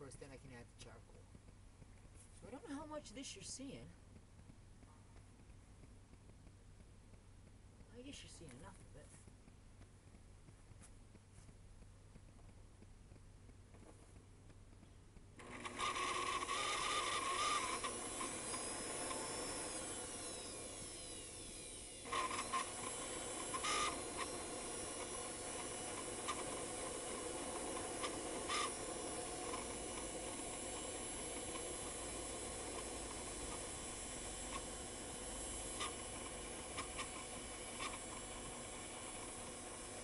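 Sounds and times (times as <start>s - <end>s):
shop vac motor whine: 15.1s - 40.0s.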